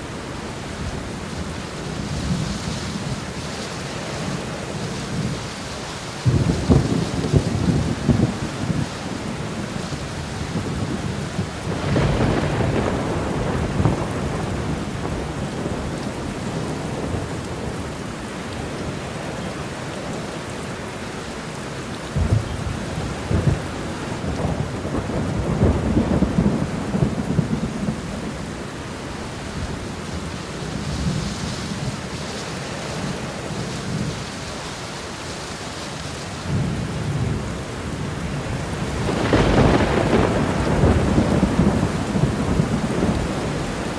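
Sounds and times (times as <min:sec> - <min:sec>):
heavy rain: 0:00.0 - 0:43.9
thunder rumbling: 0:06.1 - 0:19.6, 0:22.1 - 0:34.3, 0:36.4 - 0:43.9.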